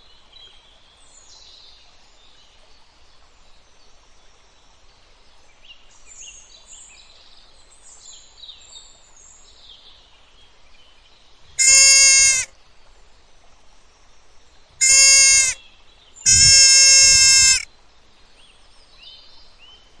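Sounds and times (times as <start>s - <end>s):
animal bleating: 11.6s - 12.5s, 14.8s - 15.6s, 16.3s - 17.6s.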